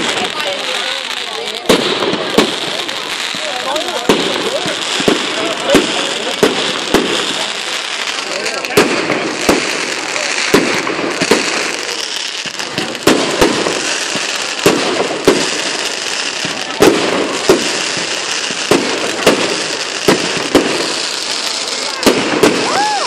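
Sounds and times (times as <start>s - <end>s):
fireworks bangs: 0.0s - 23.0s.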